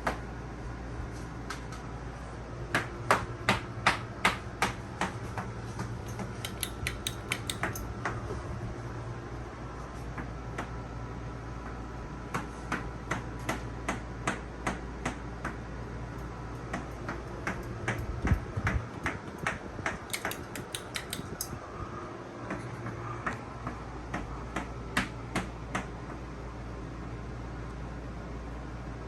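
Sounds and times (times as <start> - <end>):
ceiling fan humming: 0.0 - 29.0
sharp irregular clicks: 6.1 - 7.8, 18.7 - 21.6.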